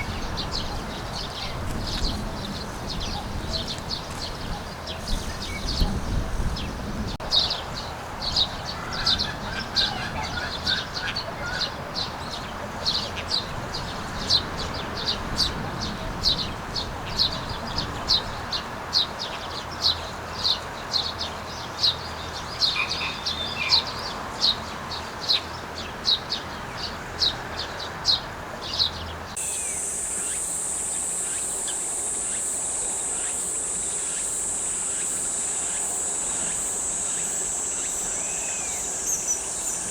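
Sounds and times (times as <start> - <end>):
dollarbird calling: 29.4 - 39.9
high-pitched hiss: 29.4 - 39.9.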